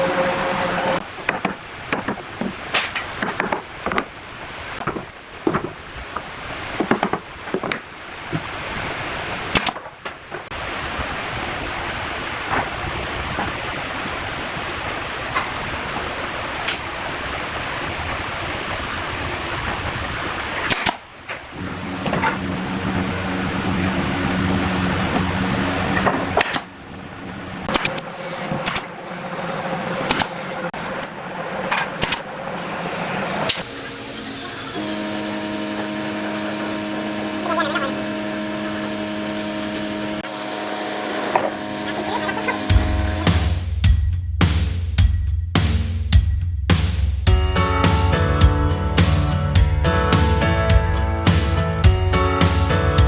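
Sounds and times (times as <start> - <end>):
electric motor humming: 0.0 - 1.0, 32.6 - 43.3
power tool hissing: 0.0 - 1.0, 32.6 - 43.4.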